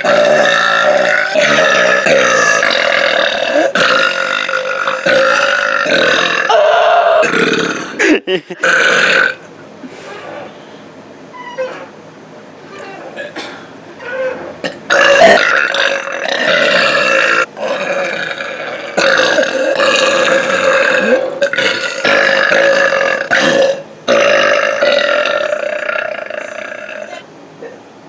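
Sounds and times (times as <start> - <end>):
person belching loudly: 0.0 - 9.4, 14.6 - 27.2.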